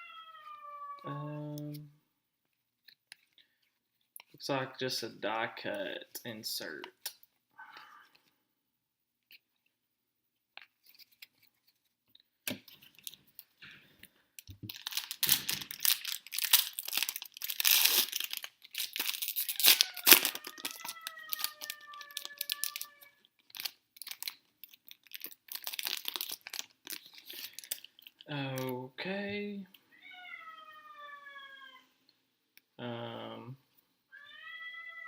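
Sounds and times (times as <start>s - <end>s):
foil wrapper tearing and crinkling: 14.7s - 28.2s.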